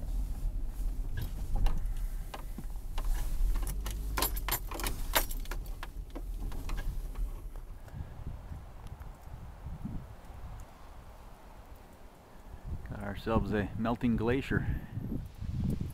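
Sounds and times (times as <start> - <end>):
van engine idling: 0.0 - 8.4
keys jangling: 3.4 - 6.0.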